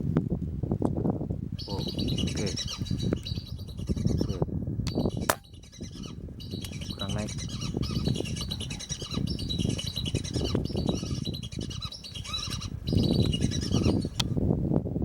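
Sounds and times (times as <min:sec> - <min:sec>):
ducks whistling chirps: 0:01.6 - 0:14.2.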